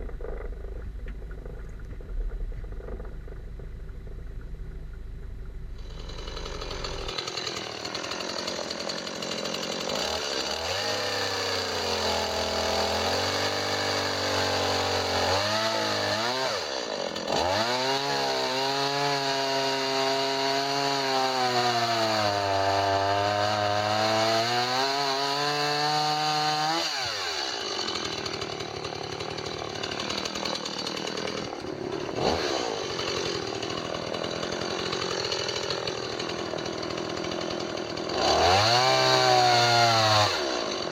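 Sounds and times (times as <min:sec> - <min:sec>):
chainsaw revving and cutting wood: 0:00.0 - 0:03.1, 0:05.7 - 0:40.9.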